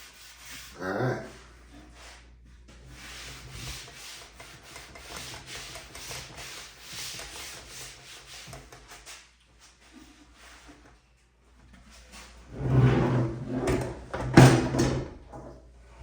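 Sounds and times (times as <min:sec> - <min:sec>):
hand rubbing wood: 0:02.9 - 0:09.2.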